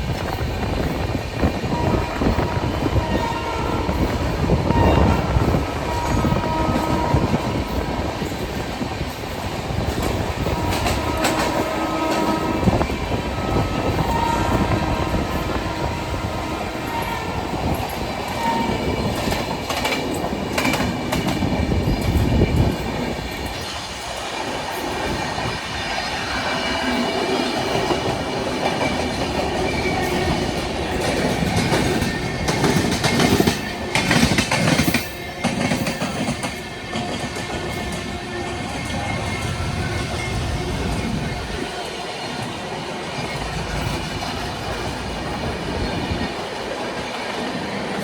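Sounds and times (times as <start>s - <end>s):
train rumble: 0.0s - 48.0s.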